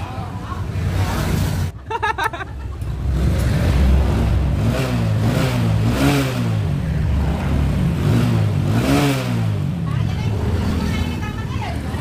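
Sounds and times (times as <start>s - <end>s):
engine revving: 2.9s - 12.0s.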